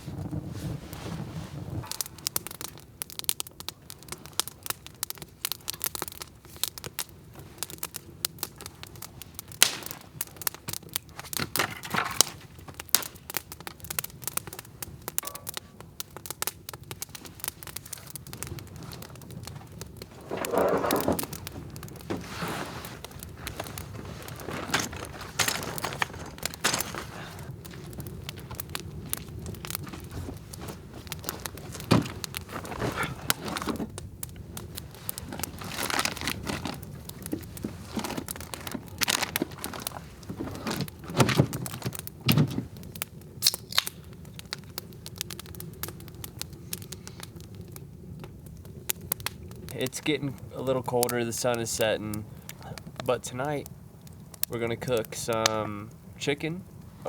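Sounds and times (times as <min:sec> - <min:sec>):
campfire crackling and popping: 0:00.0 - 0:57.0
rustling burst: 0:17.2 - 0:44.0.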